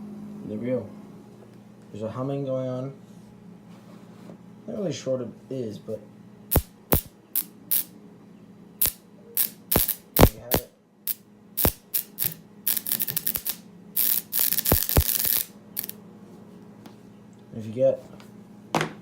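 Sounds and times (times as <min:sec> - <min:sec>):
dense electrical crackle: 0:06.5 - 0:07.9, 0:08.8 - 0:15.9
sharp electrical clicks: 0:06.5 - 0:07.9, 0:08.8 - 0:16.0
transformer humming: 0:11.6 - 0:15.9.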